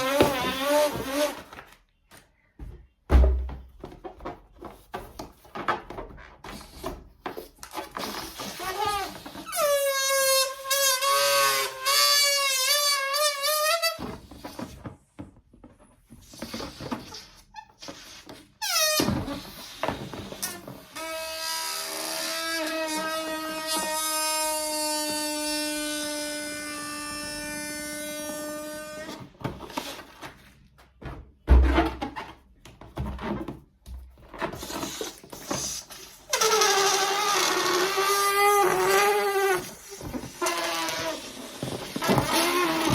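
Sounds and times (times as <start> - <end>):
balloon squealing as air escapes: 0.0 - 1.5, 7.9 - 14.1, 16.4 - 29.2, 34.5 - 42.9
rubbery balloon squeaks: 0.0 - 1.6, 6.2 - 14.8, 16.1 - 30.2, 34.1 - 42.9.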